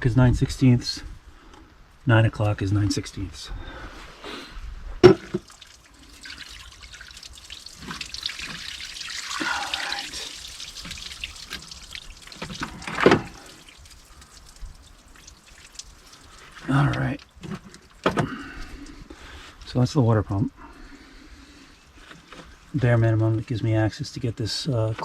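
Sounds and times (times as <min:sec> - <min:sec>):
coolant trickling and dripping: 0:05.0 - 0:19.8.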